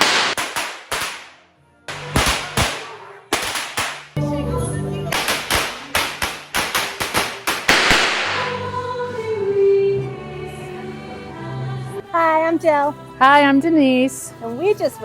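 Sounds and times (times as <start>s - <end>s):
firecrackers banging: 0.0s - 4.2s, 5.1s - 8.7s
choir-like background music: 4.1s - 6.5s, 8.0s - 15.0s.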